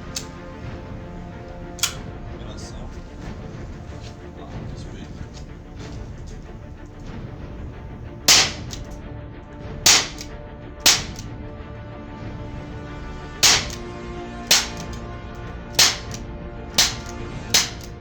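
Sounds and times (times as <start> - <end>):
airsoft pistol shots: 8.3 - 9.0, 9.9 - 10.3, 10.9 - 11.3, 13.4 - 13.9, 14.5 - 15.0, 15.8 - 16.2, 16.8 - 18.0.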